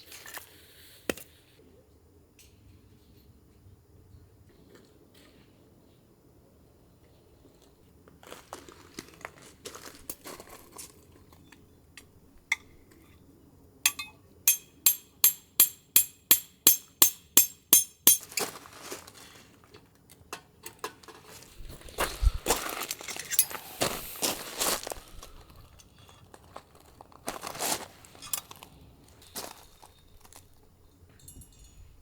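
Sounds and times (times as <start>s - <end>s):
handling clicks and clinks: 13.9s - 18.6s, 20.2s - 23.8s, 25.4s - 32.0s
rustling: 18.2s - 19.7s, 21.2s - 30.8s.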